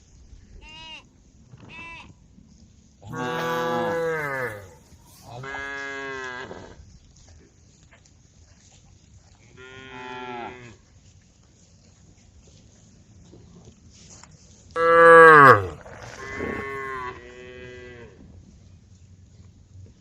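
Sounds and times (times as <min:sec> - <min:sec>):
cattle mooing: 0:03.1 - 0:04.8, 0:14.8 - 0:18.1.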